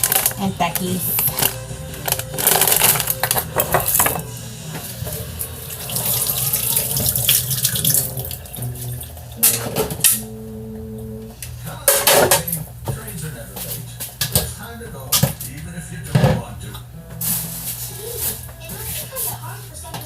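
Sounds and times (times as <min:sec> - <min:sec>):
water running from tap into sink: 0:05.0 - 0:10.0.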